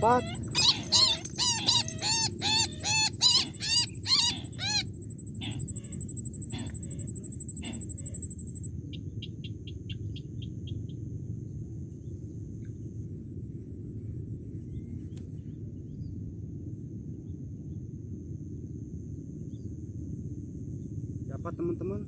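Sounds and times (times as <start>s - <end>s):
high insect whine: 0.0s - 10.6s
steady low rumble: 0.0s - 15.0s.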